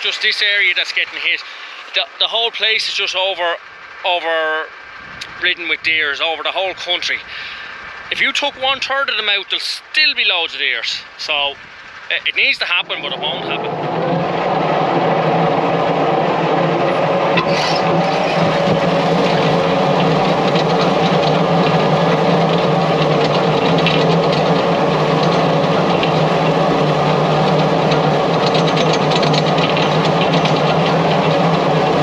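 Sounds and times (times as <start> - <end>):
tractor diesel engine running: 0.0 - 32.0.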